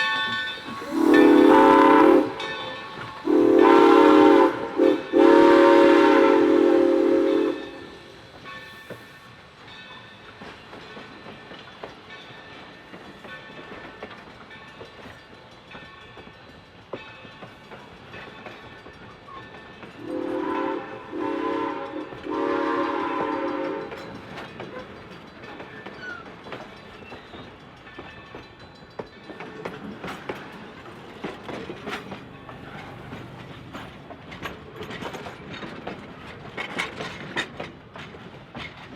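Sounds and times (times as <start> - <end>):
train whistle blasts: 0.0 - 8.2, 20.0 - 24.1
train rolling past: 0.0 - 38.9
wheels clicking on rail joints: 7.5 - 38.9.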